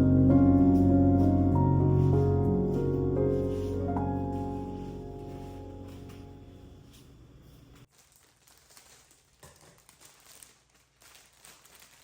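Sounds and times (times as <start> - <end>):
soft piano music: 0.0 - 6.9
faint rustling: 0.4 - 12.0.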